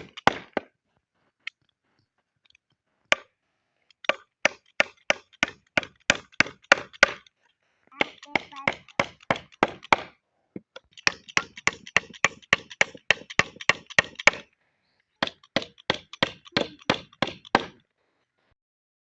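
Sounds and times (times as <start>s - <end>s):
hand tool striking wood: 0.0s - 0.8s, 3.9s - 7.3s, 8.0s - 14.5s, 15.2s - 17.8s.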